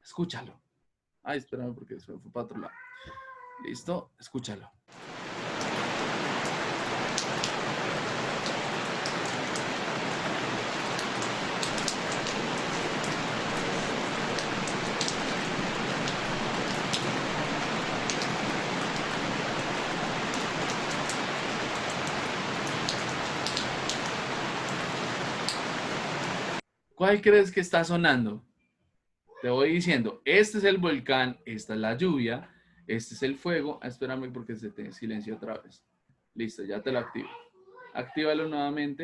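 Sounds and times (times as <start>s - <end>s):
hiss of rain: 4.9s - 26.6s
rain drop ticks: 5.0s - 26.6s.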